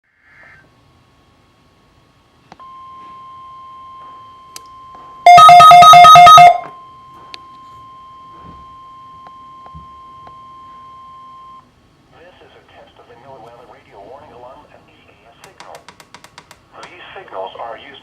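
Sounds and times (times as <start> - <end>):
steady warning alarm tone: 2.7 - 11.6
two-tone electronic alert beeping: 5.3 - 6.7.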